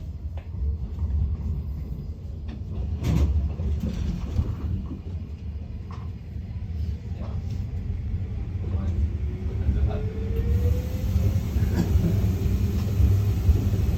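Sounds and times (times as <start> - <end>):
tram rumbling on rails: 0.0 - 13.9
sharp clack of tram: 2.4 - 5.2, 11.6 - 13.8.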